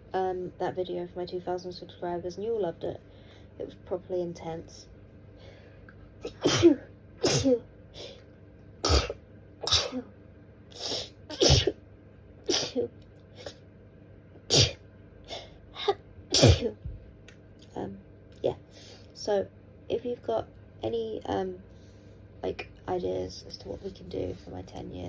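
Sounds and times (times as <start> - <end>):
woman sneezing: 6.3 - 8.2, 8.8 - 10.1, 10.8 - 11.8, 12.5 - 13.6, 14.5 - 16.8.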